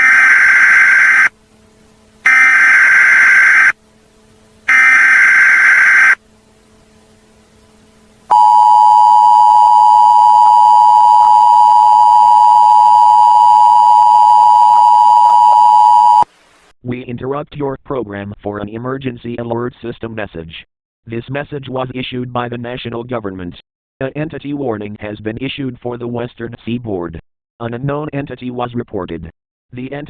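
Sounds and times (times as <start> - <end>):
digital data tone bursts: 0.0 - 1.3, 2.3 - 3.8, 4.7 - 6.2
two-tone attention signal: 4.7 - 6.2, 8.3 - 16.2.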